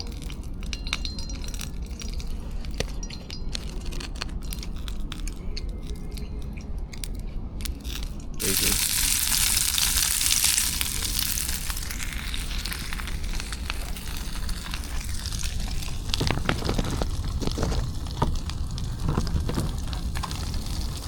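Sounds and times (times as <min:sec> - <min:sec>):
steak sizzling and crackling: 0:08.4 - 0:21.0.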